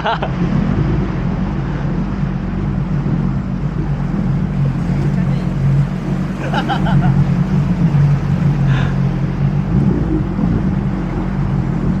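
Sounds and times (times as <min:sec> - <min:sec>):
engine running at low revs: 0:00.0 - 0:12.0
brief voices: 0:04.8 - 0:06.9.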